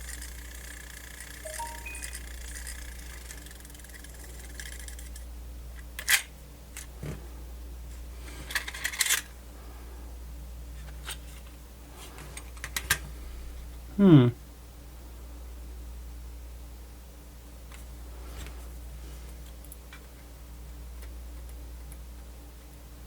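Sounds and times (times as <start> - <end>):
faint high whine: 1.4 - 2.8.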